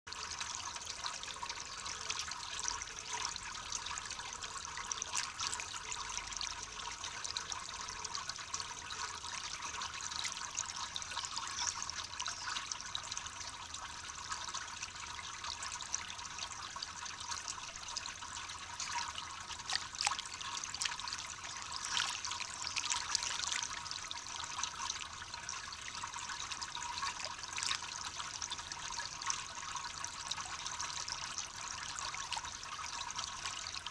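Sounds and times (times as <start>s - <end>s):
water trickling: 0.1s - 33.9s
bird splashing in water: 21.6s - 23.7s.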